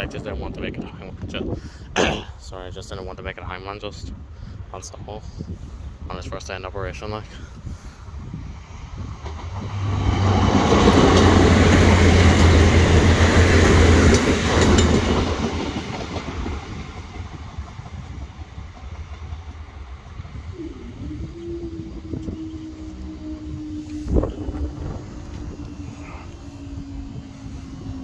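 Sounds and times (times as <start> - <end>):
diesel train passing: 6.9 - 28.0
train wheel clacks: 9.2 - 20.0.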